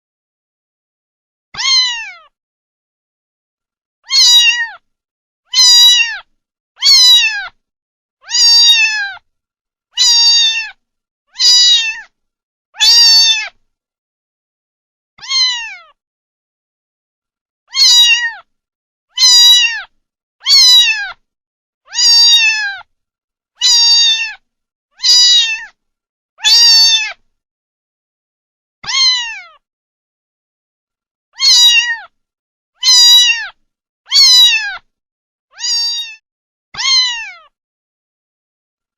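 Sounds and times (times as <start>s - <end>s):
kitten meowing: 1.6s - 2.3s, 4.1s - 4.8s, 5.5s - 7.6s, 8.2s - 9.2s, 10.0s - 12.1s, 12.8s - 13.6s, 15.2s - 16.0s, 17.7s - 18.5s, 19.2s - 21.2s, 21.9s - 22.9s, 23.6s - 24.4s, 25.0s - 25.8s, 26.4s - 27.2s, 28.8s - 29.6s, 31.4s - 32.1s, 32.8s - 34.9s, 35.5s - 36.2s, 36.8s - 37.5s.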